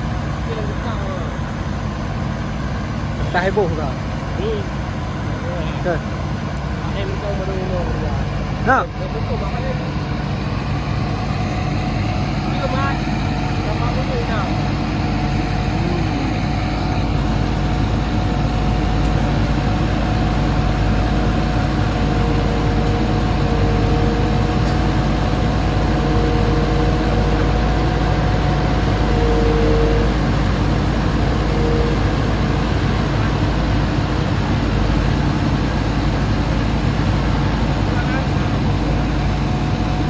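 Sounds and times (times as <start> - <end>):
excavator diesel engine running: 0.0 - 40.0
steady whine: 0.0 - 40.0.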